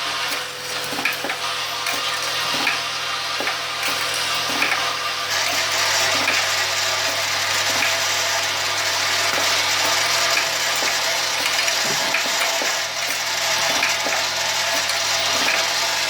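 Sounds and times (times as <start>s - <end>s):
machine hissing and humming: 0.0s - 16.0s.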